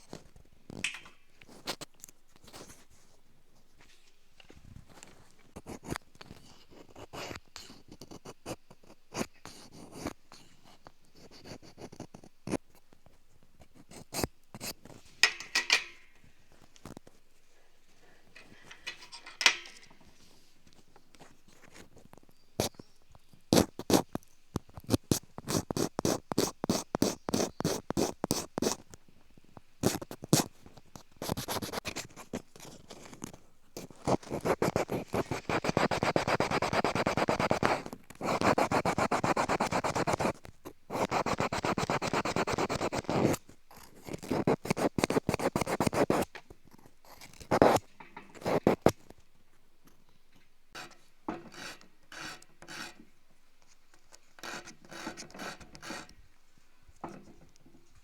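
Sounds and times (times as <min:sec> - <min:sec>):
bamboo being scraped and filed: 0:33.9 - 0:46.3, 0:50.8 - 0:53.1, 0:54.4 - 0:56.2.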